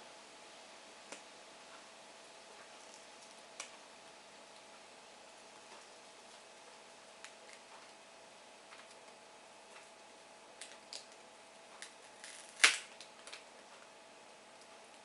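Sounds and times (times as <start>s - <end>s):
tape peeling: 11.8s - 13.4s.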